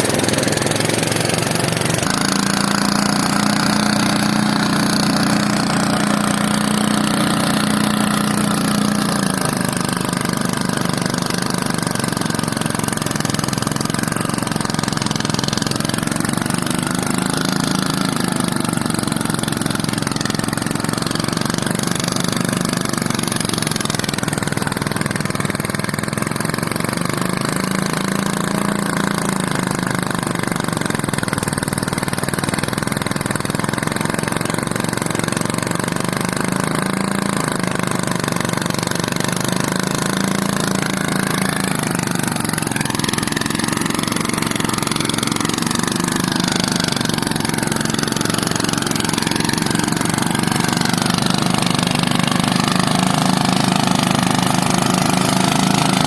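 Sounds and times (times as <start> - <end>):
small engine running: 0.0 - 56.0.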